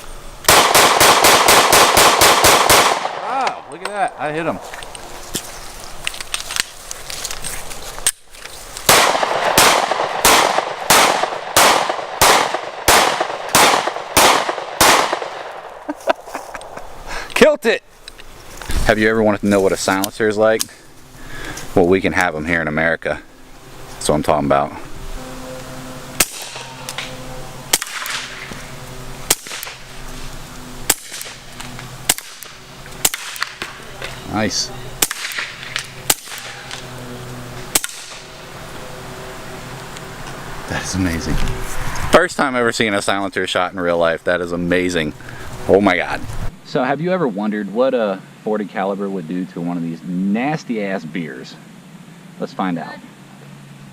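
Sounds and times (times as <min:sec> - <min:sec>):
suppressed pistol shots: 0:00.5 - 0:03.6, 0:08.9 - 0:15.8, 0:26.2 - 0:26.7.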